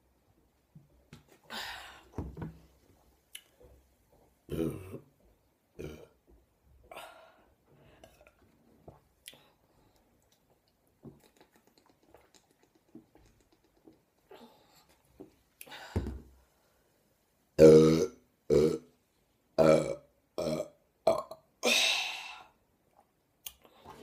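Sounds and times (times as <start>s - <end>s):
woman burping: 4.5s - 5.1s, 19.6s - 22.1s
mouth and throat clicks: 10.2s - 14.3s.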